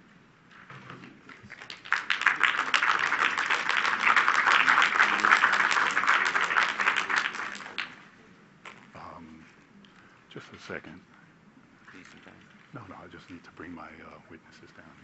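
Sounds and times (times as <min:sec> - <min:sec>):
audience applauding: 0:01.3 - 0:08.0.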